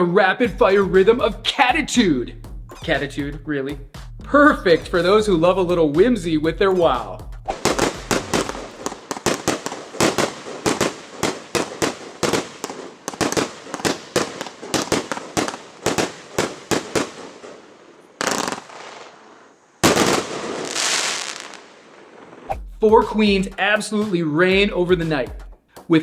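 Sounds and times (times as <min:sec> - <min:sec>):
fireworks crackling volley: 0:00.0 - 0:24.6
fireworks firing sharp reports: 0:05.8 - 0:22.5.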